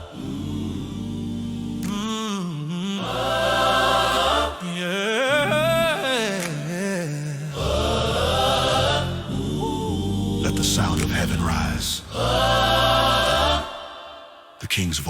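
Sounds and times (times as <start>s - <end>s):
a cappella choir harmonies: 0.0s - 15.0s
low bass voices: 7.6s - 13.6s.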